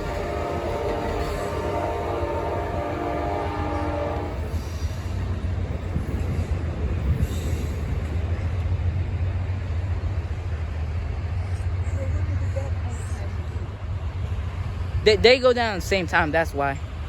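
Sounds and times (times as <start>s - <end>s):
train horn: 0.0s - 4.7s
low rumble of passing train: 0.0s - 17.0s.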